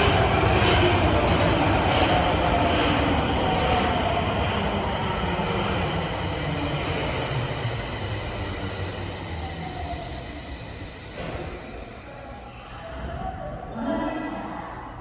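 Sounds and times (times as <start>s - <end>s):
subway train rumbling with whine: 0.0s - 15.0s.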